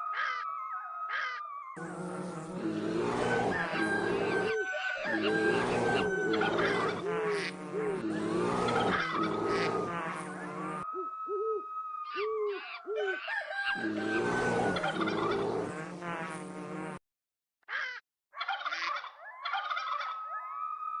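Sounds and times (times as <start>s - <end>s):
low hooting bird calls: 0.0s - 15.6s
turkey gobbling: 3.6s - 7.5s, 8.7s - 9.8s, 12.5s - 14.1s, 18.4s - 20.2s.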